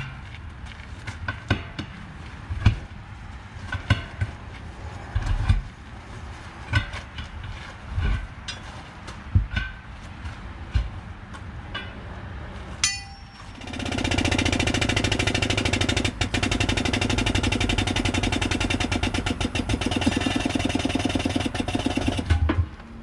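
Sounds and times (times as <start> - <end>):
machine knocking rapidly: 13.6 - 22.4.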